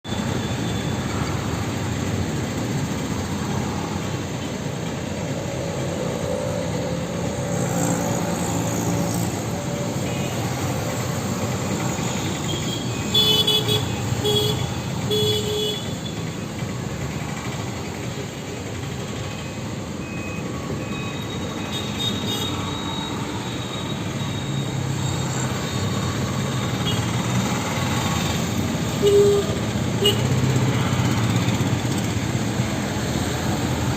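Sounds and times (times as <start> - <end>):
road traffic noise: 0.0 - 33.9
vehicle horn honks: 29.0 - 30.3.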